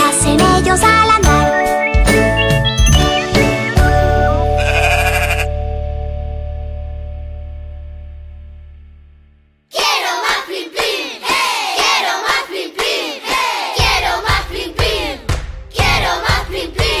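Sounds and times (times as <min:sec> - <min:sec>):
children's song with singing: 0:00.0 - 0:03.7, 0:09.7 - 0:17.0
low beat thumps: 0:13.8 - 0:17.0.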